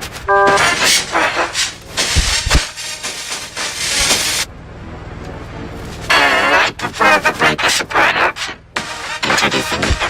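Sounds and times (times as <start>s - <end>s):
loud distorted hiss: 0.5s - 4.5s, 6.1s - 10.0s.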